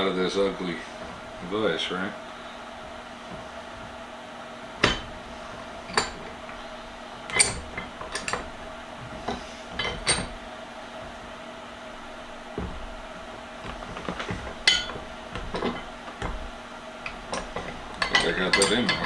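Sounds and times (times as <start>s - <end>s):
steel vise parts clinking: 4.8s - 10.4s, 12.0s - 19.0s.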